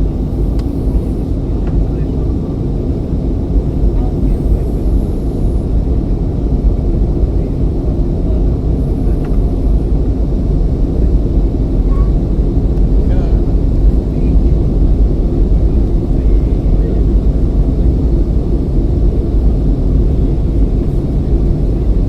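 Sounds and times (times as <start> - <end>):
airliner cabin roar: 0.0 - 22.0.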